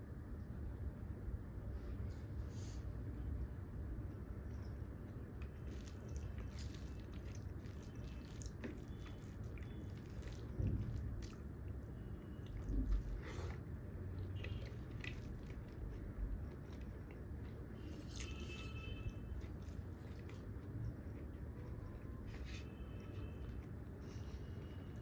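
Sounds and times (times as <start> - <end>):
person chewing food: 5.3 - 25.0.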